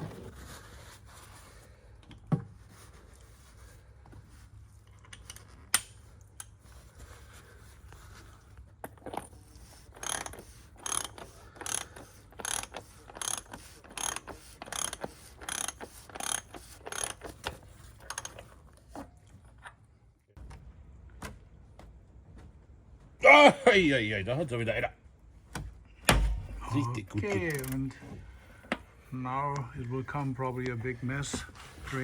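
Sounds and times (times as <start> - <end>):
ratchet wrench clicking: 10.0 - 17.3.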